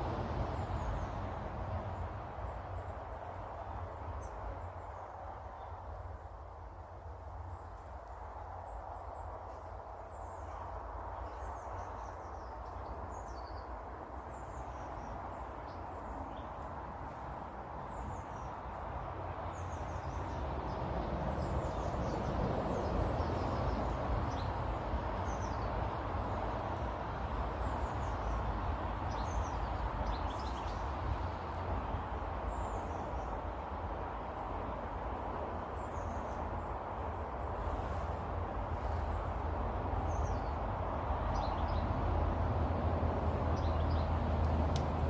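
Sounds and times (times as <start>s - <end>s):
small birds chirping: 7.5s - 33.5s, 35.6s - 41.9s, 43.6s - 44.1s.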